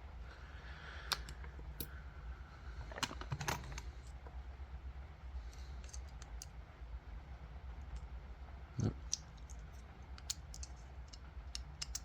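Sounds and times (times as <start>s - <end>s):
lock picks clicking in a lock: 9.1s - 12.0s.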